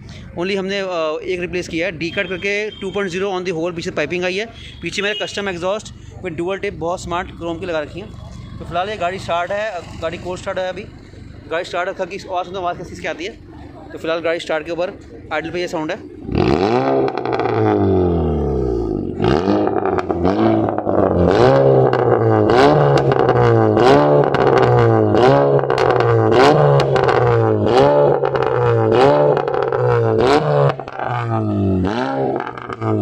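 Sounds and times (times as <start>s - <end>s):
car engine revving: 5.6s - 33.0s
exhaust pops and crackles: 16.1s - 17.9s, 19.1s - 33.0s.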